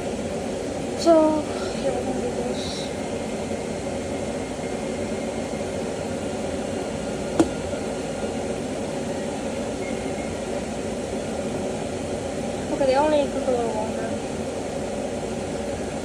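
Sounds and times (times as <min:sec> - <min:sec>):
steady mechanical hum: 0:00.0 - 0:16.0
sharp click: 0:07.4 - 0:07.6.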